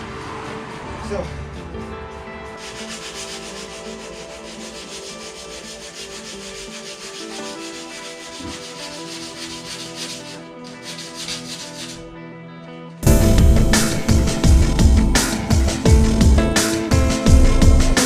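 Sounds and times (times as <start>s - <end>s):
sandpaper scrubbing: 0.0s - 12.2s.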